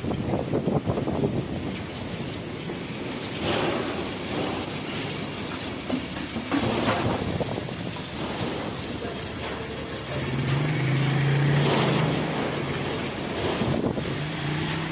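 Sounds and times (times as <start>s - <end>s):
strong wind buffeting microphone: 0.0s - 2.6s, 6.8s - 8.2s, 13.2s - 14.5s.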